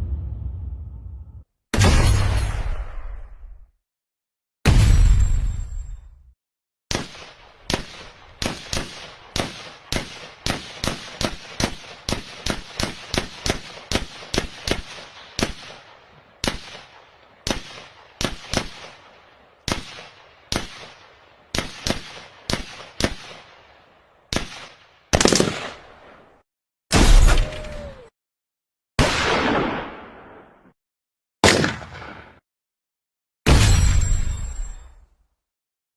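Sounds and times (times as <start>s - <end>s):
gunshots: 6.9s - 23.5s, 24.3s - 26.1s, 26.9s - 27.8s, 29.0s - 30.6s, 31.4s - 32.4s.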